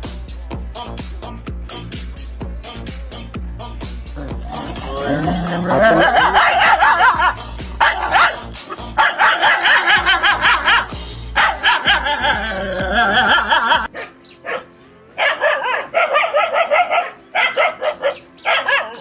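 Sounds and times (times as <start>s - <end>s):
background music: 0.0s - 19.0s
dog barking and yipping: 4.3s - 19.0s.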